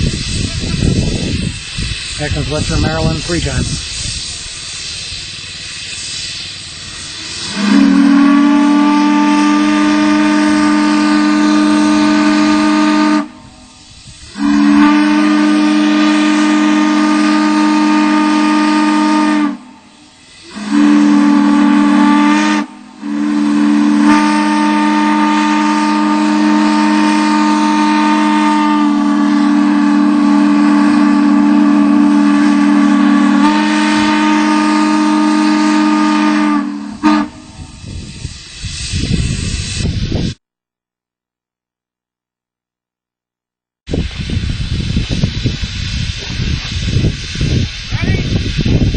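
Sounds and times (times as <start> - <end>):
steam hiss: 0.0 - 40.4, 43.9 - 48.9
chime steam whistle blowing: 4.8 - 39.9.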